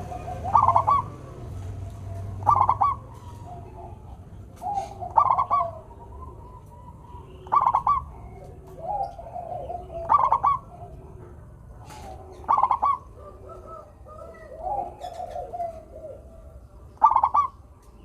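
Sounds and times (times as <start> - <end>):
doves cooing: 0.0 - 17.8.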